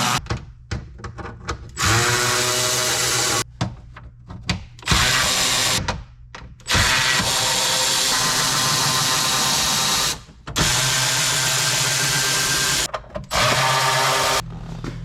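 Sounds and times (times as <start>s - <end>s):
power drill whirring: 1.8s - 3.4s, 6.7s - 14.4s.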